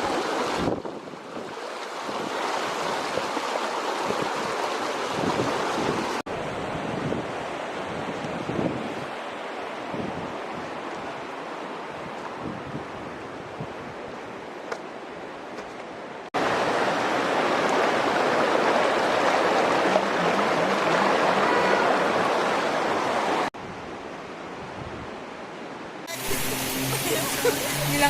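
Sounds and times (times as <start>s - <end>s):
waterfall rushing: 16.4s - 23.5s, 26.0s - 28.0s.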